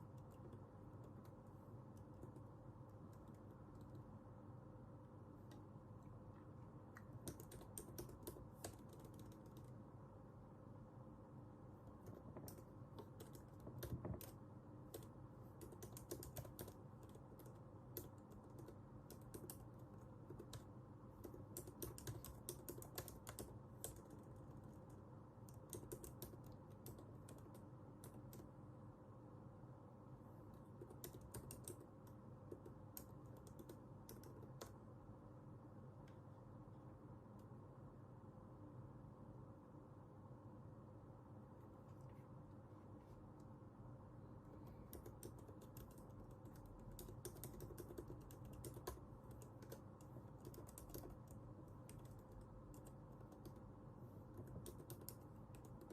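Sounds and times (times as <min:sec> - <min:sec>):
keyboard typing: 0:00.0 - 0:04.2, 0:06.9 - 0:09.8, 0:11.8 - 0:28.6, 0:30.5 - 0:34.8, 0:44.5 - 0:55.9
faint steady hum: 0:00.0 - 0:55.9.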